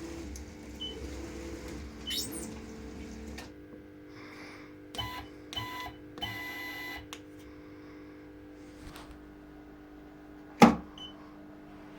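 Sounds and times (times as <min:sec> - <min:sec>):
stepper motors whining: 0:00.0 - 0:03.5.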